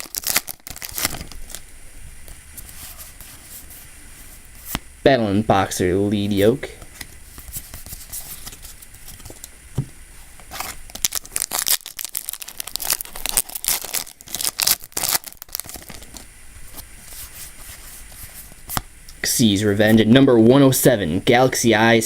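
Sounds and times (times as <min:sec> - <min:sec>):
foil pack tearing and crinkling: 0:00.0 - 0:01.6, 0:10.5 - 0:16.3.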